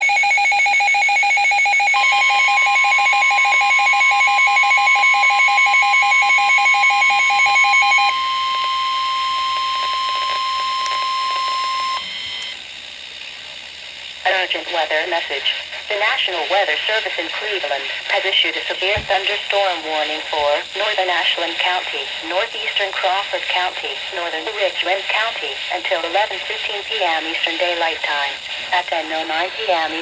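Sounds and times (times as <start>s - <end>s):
steady high alarm tone: 0.0s - 12.6s.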